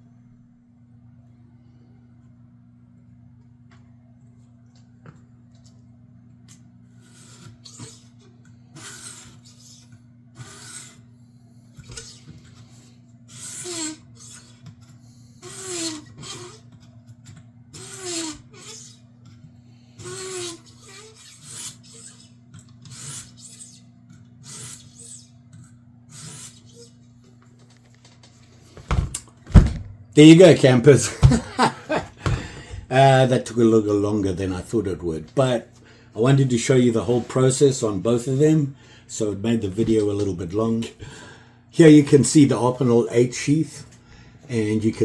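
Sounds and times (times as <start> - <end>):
low electrical hum: 0.0 - 45.0
hand scraping strokes with squeaks: 7.0 - 11.1, 11.8 - 16.9, 17.7 - 19.1, 20.0 - 25.4, 26.1 - 27.1.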